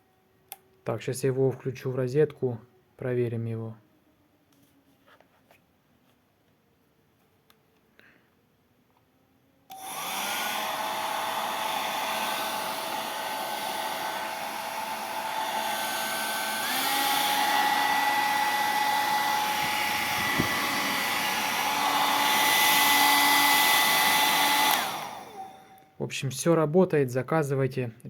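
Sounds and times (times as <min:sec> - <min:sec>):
hair dryer click: 0:09.7 - 0:25.6
hair dryer whirring: 0:09.7 - 0:25.8.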